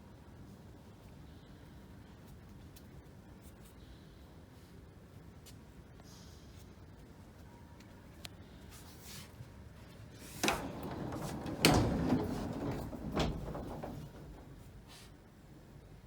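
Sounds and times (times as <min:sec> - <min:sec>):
knocks and clunks: 0:10.4 - 0:15.0.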